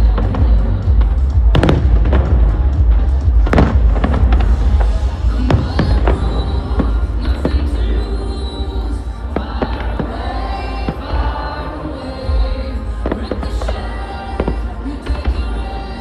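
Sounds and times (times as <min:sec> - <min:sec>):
fireworks bursting with bangs: 0:00.0 - 0:16.0
loud music: 0:00.0 - 0:16.0
steady low rumble: 0:00.0 - 0:16.0.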